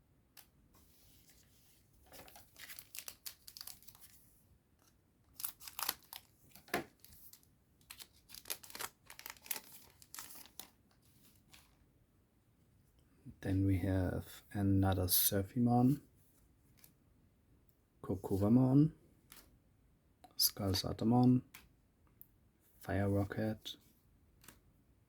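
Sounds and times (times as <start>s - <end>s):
foil wrapper tearing and crinkling: 2.2s - 4.1s, 5.3s - 10.8s.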